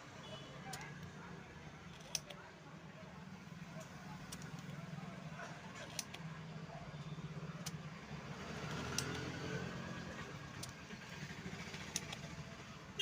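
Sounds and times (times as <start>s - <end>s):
sharp clicks: 3.8s - 4.8s, 5.8s - 6.3s, 8.6s - 9.4s
vehicle engine running: 7.3s - 12.9s.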